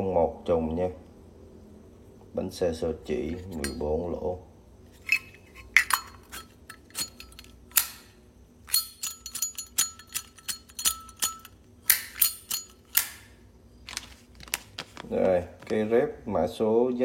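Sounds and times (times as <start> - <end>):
lighter metallic clicks: 7.7 - 8.1, 11.9 - 13.3.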